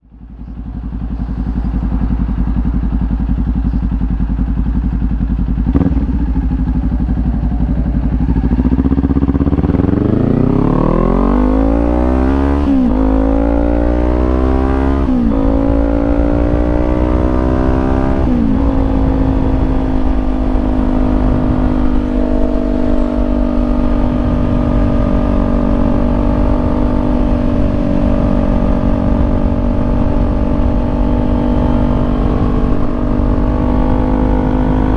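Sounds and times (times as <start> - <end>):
motorcycle engine accelerating: 0.0 - 34.9.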